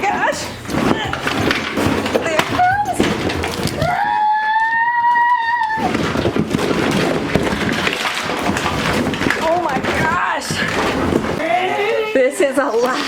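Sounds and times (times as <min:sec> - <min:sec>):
plastic toy pieces rattling: 0:00.0 - 0:04.2, 0:05.6 - 0:12.0
child squealing: 0:03.8 - 0:05.9.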